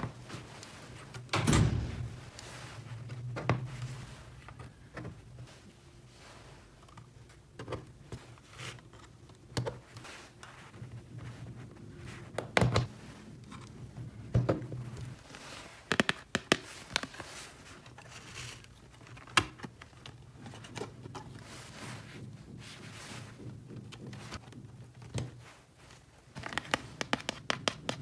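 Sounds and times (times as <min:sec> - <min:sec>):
low steady hum: 0:00.0 - 0:08.1.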